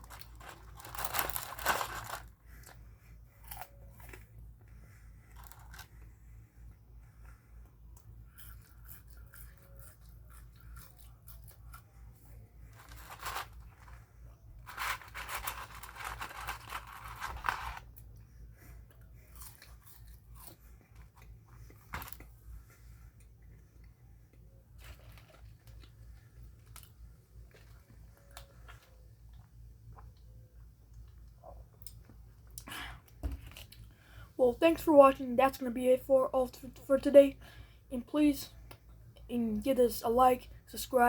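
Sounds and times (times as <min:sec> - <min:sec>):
person chewing with crunching: 0:00.0 - 0:06.1, 0:07.1 - 0:13.9, 0:14.7 - 0:33.9.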